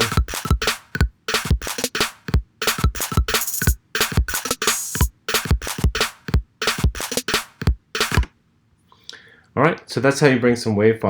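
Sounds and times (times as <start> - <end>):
drum machine beat: 0.0 - 8.3.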